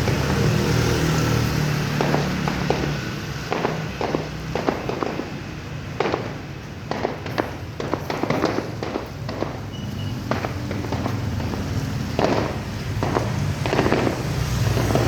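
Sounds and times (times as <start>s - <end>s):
fireworks bangs and crackling: 0.0s - 15.0s.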